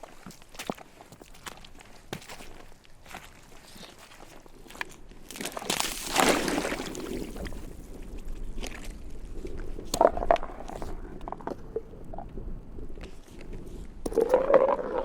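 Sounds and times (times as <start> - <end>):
ice knocks and creaks: 0.0 - 12.3, 12.9 - 15.0
water sloshing against ice: 5.2 - 7.8.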